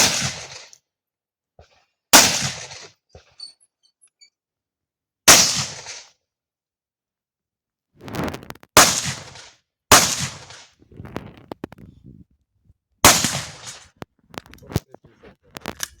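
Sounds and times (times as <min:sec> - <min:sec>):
gunshots with echo: 0:00.0 - 0:00.6, 0:02.2 - 0:02.9, 0:05.3 - 0:06.0, 0:08.8 - 0:10.8, 0:13.0 - 0:13.9.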